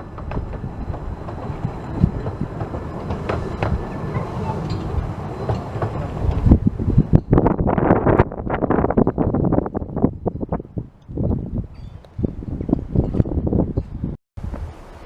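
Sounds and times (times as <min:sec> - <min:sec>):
steam train running: 0:00.0 - 0:08.1
wind buffeting microphone: 0:00.0 - 0:15.0.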